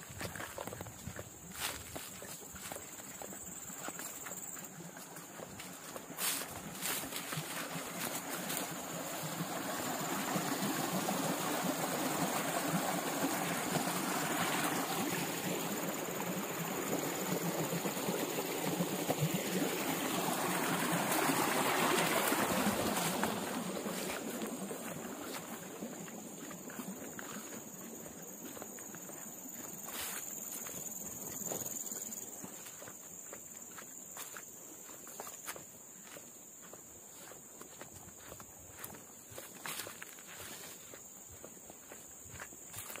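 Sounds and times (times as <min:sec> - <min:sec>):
water rushing: 0:02.6 - 0:32.2.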